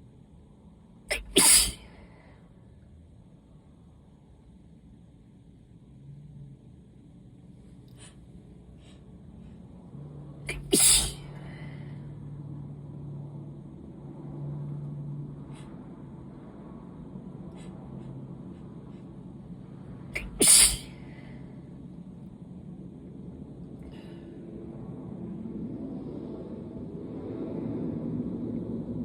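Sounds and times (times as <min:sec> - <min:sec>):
person sneezing: 0:01.1 - 0:02.0, 0:10.5 - 0:11.4, 0:20.2 - 0:21.2
quick catch of breath: 0:01.1 - 0:02.6, 0:07.9 - 0:09.6, 0:10.5 - 0:12.1, 0:15.4 - 0:15.8, 0:20.2 - 0:21.6, 0:23.8 - 0:24.4.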